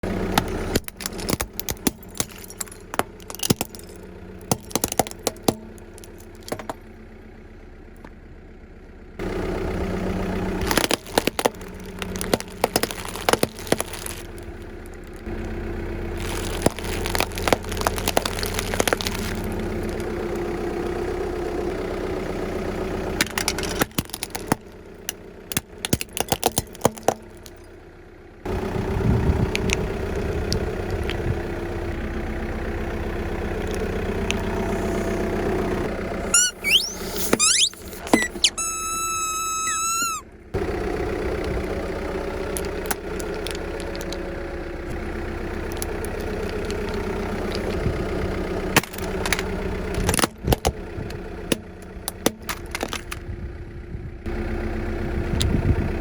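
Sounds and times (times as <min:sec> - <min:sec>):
car engine idling: 0:00.0 - 0:56.0
tyres crushing crunchy objects: 0:00.7 - 0:06.7, 0:10.6 - 0:15.1, 0:16.1 - 0:20.0, 0:23.4 - 0:24.7, 0:25.5 - 0:27.6, 0:42.6 - 0:44.2.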